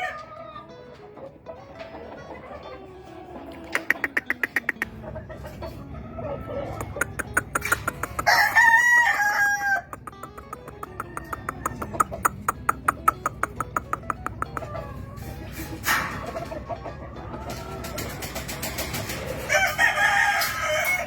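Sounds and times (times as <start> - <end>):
rooster crowing: 8.3 - 9.9, 19.5 - 21.0.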